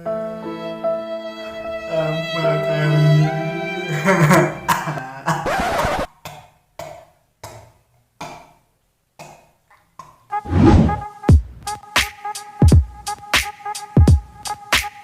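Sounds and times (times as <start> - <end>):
background music: 0.0 - 5.0, 10.3 - 15.0.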